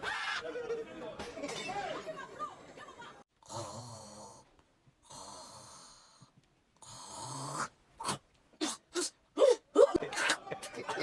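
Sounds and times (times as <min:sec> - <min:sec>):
person snoring heavily: 0:03.4 - 0:08.8.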